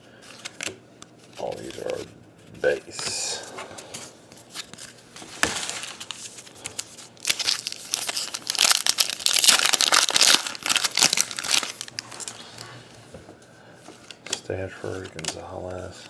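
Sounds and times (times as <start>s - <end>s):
wrapper tearing and crinkling: 4.5s - 12.4s.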